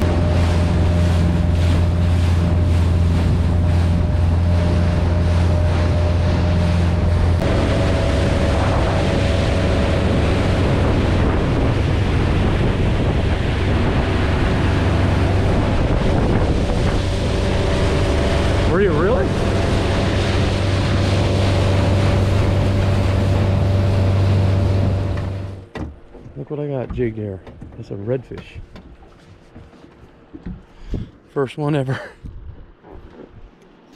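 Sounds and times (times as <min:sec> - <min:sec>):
wind buffeting microphone: 0:00.0 - 0:25.6, 0:32.2 - 0:33.6
sea water washing: 0:00.0 - 0:31.0
boat motor running: 0:00.0 - 0:33.9.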